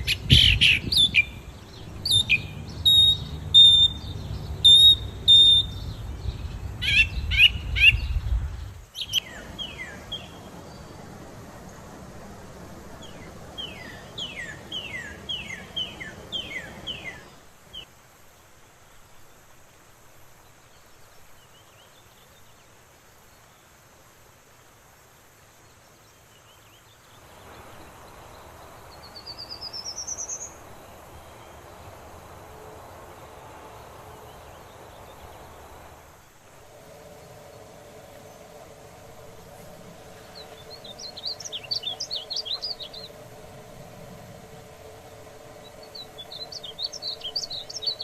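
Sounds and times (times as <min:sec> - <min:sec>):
buzzy rising bird trill: 0:00.0 - 0:08.2, 0:36.6 - 0:48.0
songbirds singing: 0:00.0 - 0:17.9, 0:20.4 - 0:23.8, 0:25.5 - 0:48.0
steady outdoor hiss: 0:00.0 - 0:48.0
down-slurred whistled bird notes: 0:02.0 - 0:06.0.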